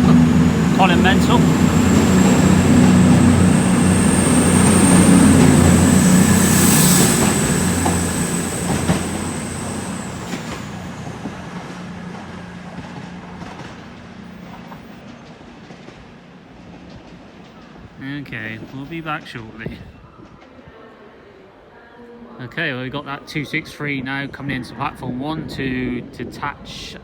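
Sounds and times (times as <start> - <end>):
thin high whine: 0.0 - 15.0
diesel train engines running: 0.0 - 18.0.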